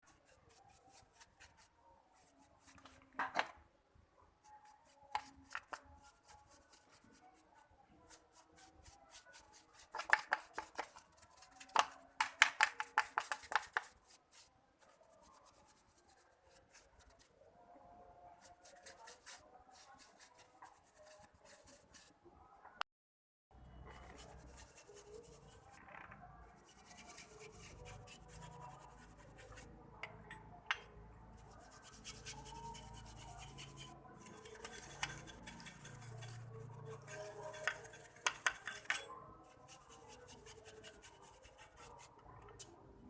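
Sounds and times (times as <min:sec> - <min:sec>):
scraping and clicking on metal parts: 0:34.4 - 0:39.1.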